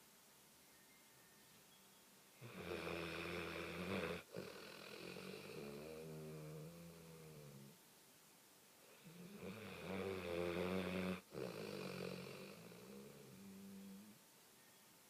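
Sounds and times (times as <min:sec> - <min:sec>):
dog snoring: 0:02.4 - 0:07.8, 0:08.9 - 0:14.2.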